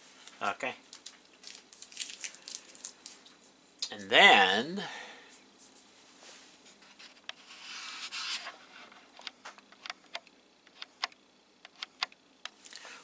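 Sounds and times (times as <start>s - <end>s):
rubbing scrape: 6.2s - 8.9s.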